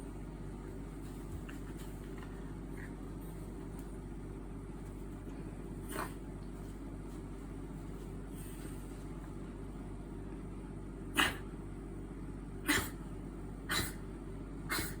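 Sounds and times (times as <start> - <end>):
steady low hum: 0.0 - 15.0
dog snorting: 5.8 - 6.2, 11.2 - 11.5, 12.6 - 13.0, 13.7 - 14.0, 14.7 - 15.0.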